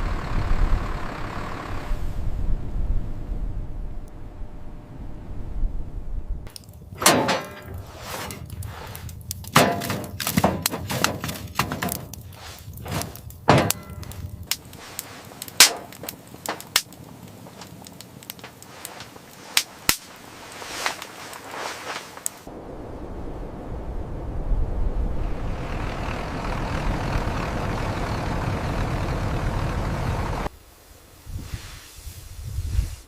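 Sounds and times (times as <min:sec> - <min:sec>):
hard ringing knocks and cracks: 0:07.0 - 0:07.8, 0:09.5 - 0:12.2, 0:13.0 - 0:14.5, 0:15.6 - 0:16.9.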